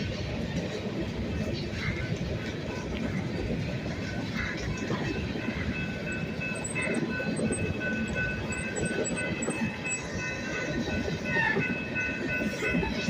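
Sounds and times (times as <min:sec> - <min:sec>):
train rumbling past: 0:00.0 - 0:13.0
high ringing crossing bell: 0:04.8 - 0:13.0.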